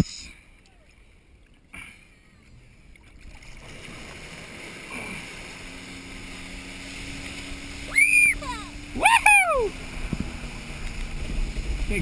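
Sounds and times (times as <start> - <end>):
water rushing around wakeboard: 0.0 - 12.0
low engine hum: 0.4 - 12.0.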